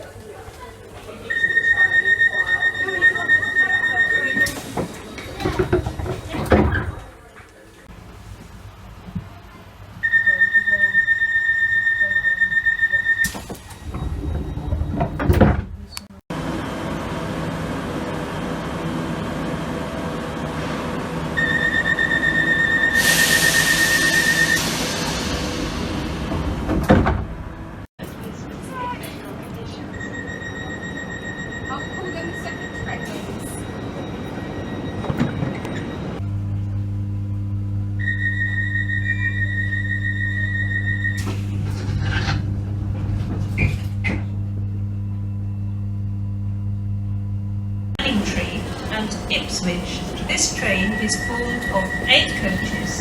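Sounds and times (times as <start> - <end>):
high warning tone: 1.2 - 5.7, 10.0 - 15.2, 21.4 - 24.7, 29.6 - 36.4, 37.4 - 41.9, 47.9 - 53.0
rapidly pulsing door alarm beep: 1.3 - 4.6, 10.0 - 15.1, 21.4 - 24.7, 29.9 - 36.2, 48.1 - 53.0
train doors sliding shut: 4.3 - 7.1, 13.2 - 15.9, 22.9 - 27.6, 32.9 - 36.2, 41.1 - 44.3
train hum: 15.8 - 45.3, 46.5 - 53.0.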